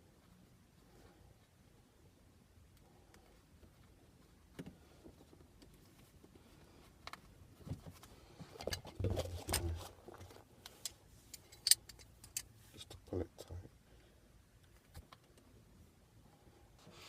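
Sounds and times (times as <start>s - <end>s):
rustling: 2.9s - 12.8s.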